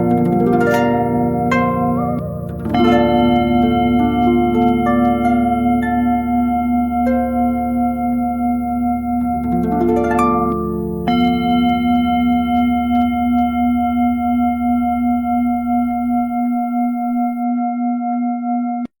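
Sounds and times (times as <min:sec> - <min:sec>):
falling run of ringing tones: 0:00.0 - 0:17.4
low drone: 0:00.0 - 0:17.4
singing bowl ringing: 0:00.0 - 0:17.4.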